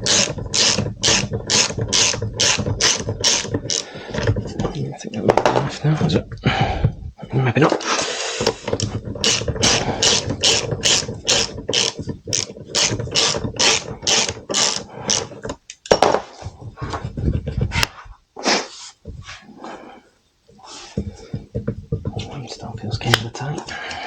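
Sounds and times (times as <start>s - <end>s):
ratchet wrench clicking: 0.0s - 3.9s, 9.2s - 15.3s.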